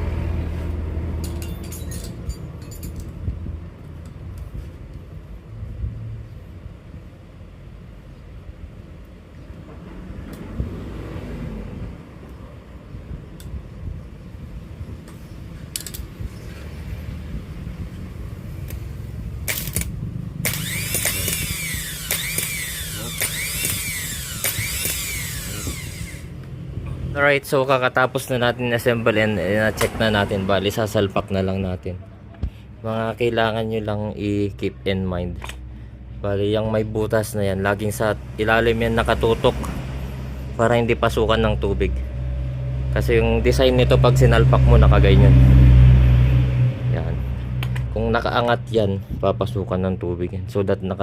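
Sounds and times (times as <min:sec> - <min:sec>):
vehicle rumbling past: 0:00.0 - 0:50.5
small electric motor whirring: 0:19.5 - 0:26.5
sharp clicks: 0:19.5 - 0:26.6.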